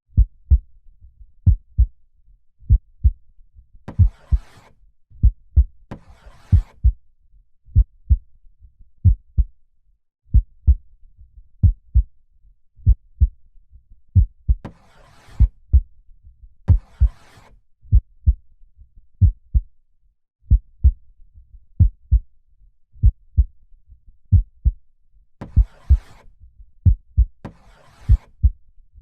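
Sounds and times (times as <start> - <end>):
slow heartbeat thumping: 0.2 - 0.6, 1.4 - 1.9, 2.7 - 3.2, 7.8 - 8.2, 9.0 - 9.5, 10.3 - 10.8, 11.6 - 12.1, 12.8 - 13.4, 17.9 - 18.4, 19.2 - 19.7, 21.8 - 22.2, 23.0 - 23.5, 24.3 - 24.8, 25.5 - 26.1, 26.8 - 27.4.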